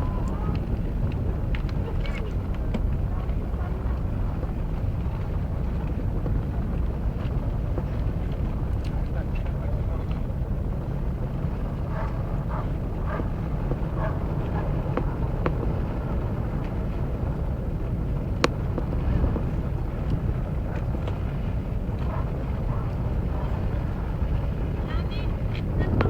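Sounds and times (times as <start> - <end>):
ship engines rumbling: 0.0 - 26.0
faint distant voices: 18.5 - 26.0.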